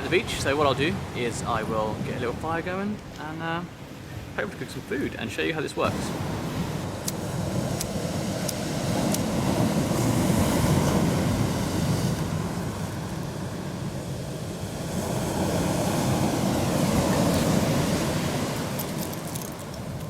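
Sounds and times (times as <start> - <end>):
sea waves breaking on shore: 0.0 - 20.0.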